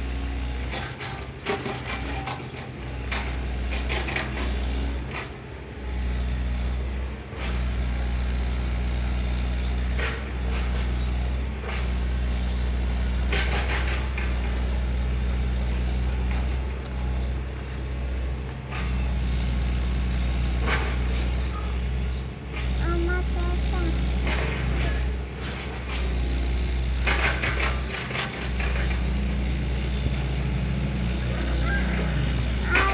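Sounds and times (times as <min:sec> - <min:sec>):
excavator engine running: 0:00.0 - 0:32.9
knocks and clanks: 0:13.2 - 0:14.7, 0:27.0 - 0:30.4.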